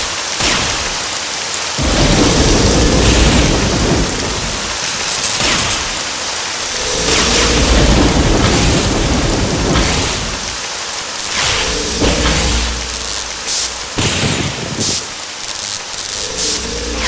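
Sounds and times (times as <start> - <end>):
heavy rain: 0.0 - 17.0
thunder rumbles: 1.8 - 5.4, 6.6 - 14.5.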